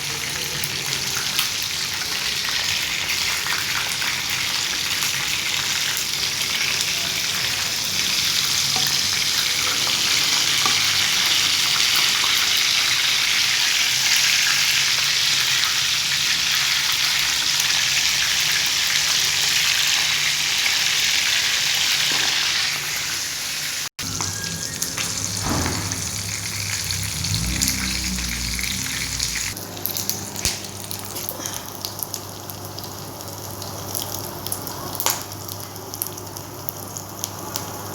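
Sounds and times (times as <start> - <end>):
frying sizzle in hot oil: 0.0 - 37.9
low hum: 24.0 - 29.6.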